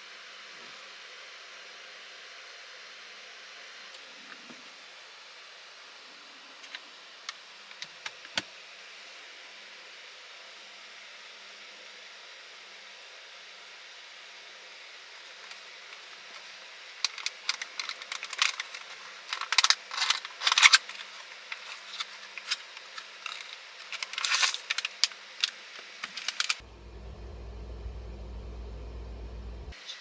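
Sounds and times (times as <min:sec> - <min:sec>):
low steady hum: 0:15.4 - 0:29.8
small hard objects clicking: 0:17.0 - 0:26.6.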